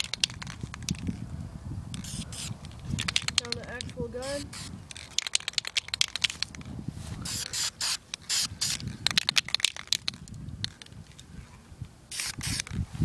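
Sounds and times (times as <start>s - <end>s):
sharp clicks and crackles: 0.0s - 1.2s, 1.9s - 4.0s, 4.9s - 6.7s, 8.1s - 11.2s
spray paint can hissing: 2.0s - 6.6s, 7.2s - 10.2s, 12.1s - 12.8s.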